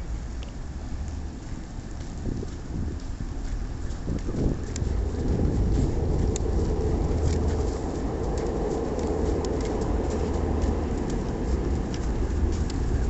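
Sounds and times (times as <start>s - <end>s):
train rumbling past: 0.0s - 13.0s
faint clicking: 0.3s - 5.4s, 6.1s - 7.6s, 8.2s - 13.0s.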